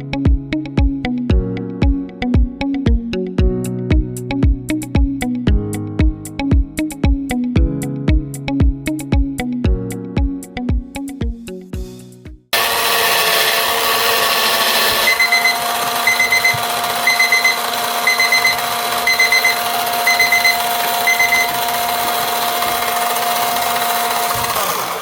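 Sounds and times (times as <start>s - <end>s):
kitchen timer beeping: 12.6s - 24.6s
electric sander humming: 12.6s - 25.0s.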